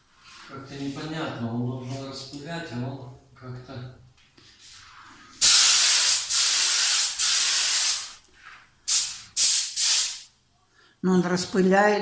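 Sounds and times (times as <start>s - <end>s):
paint spray gun hissing: 5.4s - 8.2s, 8.9s - 10.3s.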